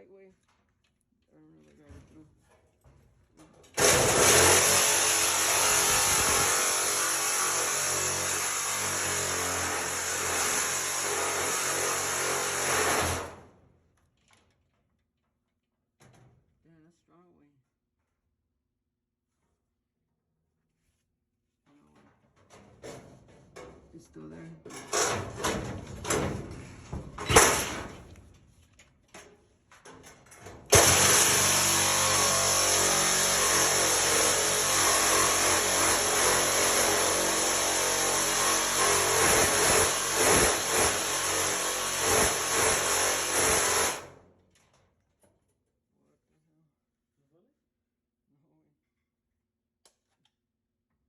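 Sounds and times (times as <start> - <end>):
cutting tool cutting metal: 3.8 - 13.4, 30.7 - 44.1
sheet metal knocking and scraping: 22.0 - 24.0, 24.7 - 28.3.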